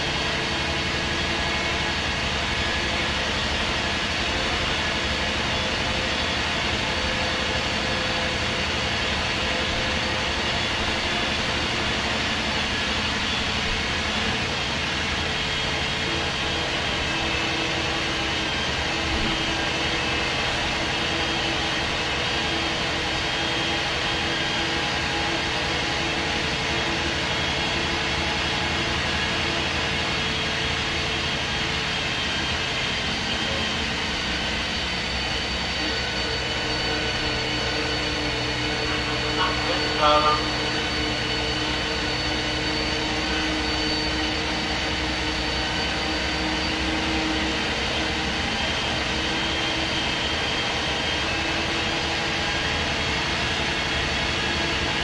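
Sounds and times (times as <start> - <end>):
bus diesel engine running: 0.1 - 43.4
droning tone: 0.1 - 51.7.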